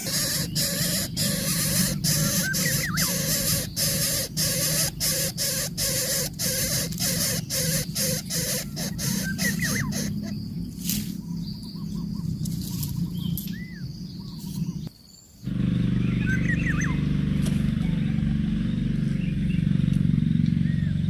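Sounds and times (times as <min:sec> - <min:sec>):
steady low hum: 0:00.0 - 0:14.9
high bird chirps: 0:00.0 - 0:15.0, 0:16.0 - 0:17.0.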